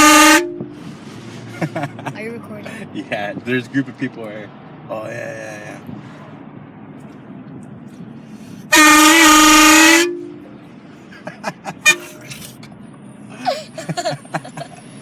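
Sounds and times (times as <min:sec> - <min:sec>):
train horn blast: 0:00.0 - 0:00.8, 0:08.7 - 0:10.6, 0:11.8 - 0:12.3.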